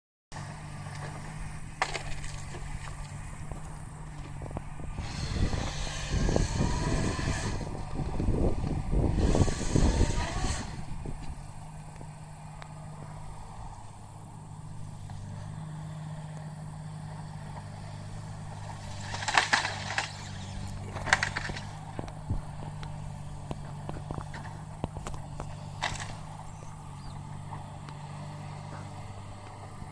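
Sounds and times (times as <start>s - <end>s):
excavator diesel engine running: 0.4s - 29.9s
loud crunching: 0.4s - 29.9s
sharp bursts of noise: 5.0s - 7.7s, 9.1s - 10.9s.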